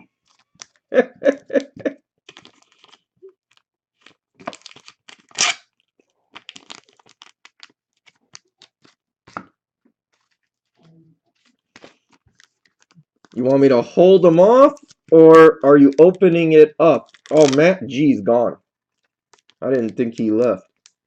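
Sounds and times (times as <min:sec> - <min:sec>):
packaging crinkling and tearing: 0:00.2 - 0:00.9, 0:02.3 - 0:09.4, 0:11.4 - 0:13.7, 0:14.3 - 0:17.8, 0:18.7 - 0:21.0.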